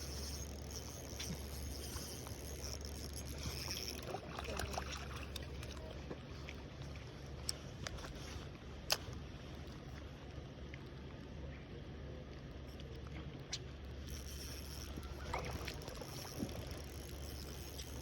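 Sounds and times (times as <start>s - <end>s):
water sloshing and splashing: 0.0s - 10.1s, 14.5s - 18.0s.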